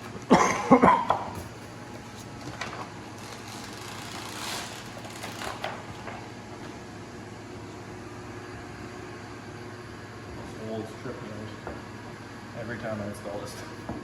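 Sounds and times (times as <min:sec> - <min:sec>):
squeegee sliding over window vinyl: 0:03.2 - 0:05.8.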